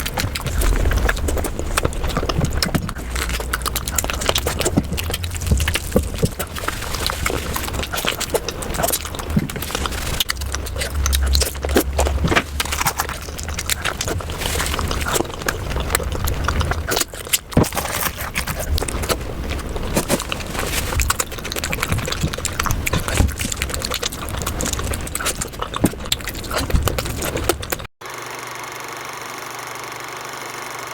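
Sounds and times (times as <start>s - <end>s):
steady hum: 0.0s - 23.6s
chewing mouth clicks and smacks: 0.0s - 27.9s.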